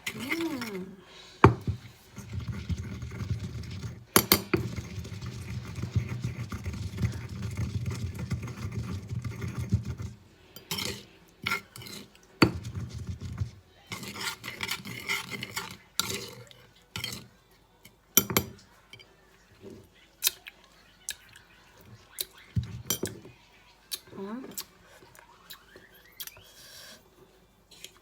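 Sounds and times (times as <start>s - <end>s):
spoon scraping and clinking bowl: 0.0s - 19.1s, 22.6s - 23.3s.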